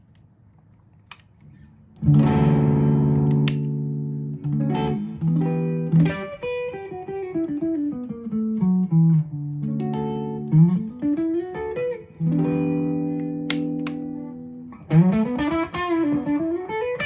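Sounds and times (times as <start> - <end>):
electric guitar chord ringing: 2.0 - 17.0
picked guitar notes: 2.0 - 17.0.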